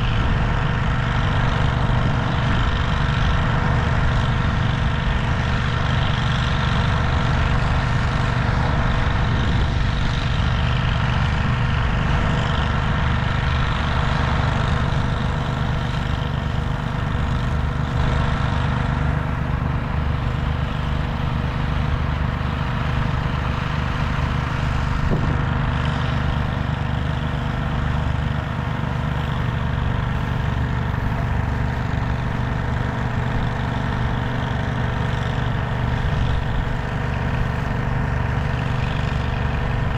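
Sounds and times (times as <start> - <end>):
large engine idling: 0.0 - 39.9.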